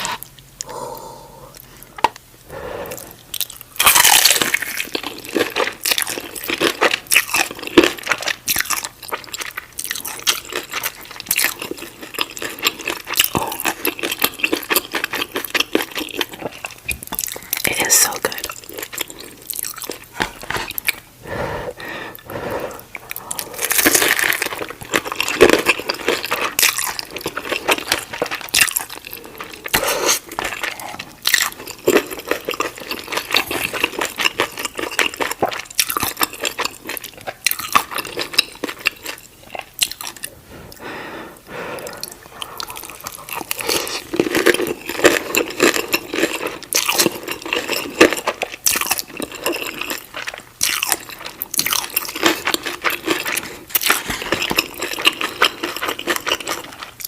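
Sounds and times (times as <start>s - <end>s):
crunchy chewing: 2.9s - 21.1s, 22.1s - 40.8s, 41.8s - 57.0s.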